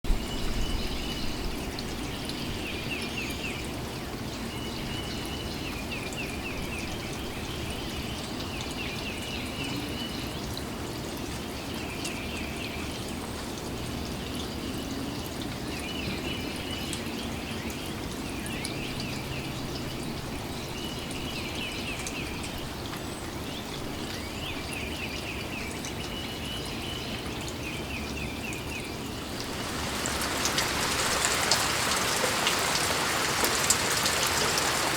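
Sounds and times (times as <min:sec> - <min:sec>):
light rain falling: 0:00.1 - 0:34.9
water pouring and trickling: 0:00.1 - 0:34.9.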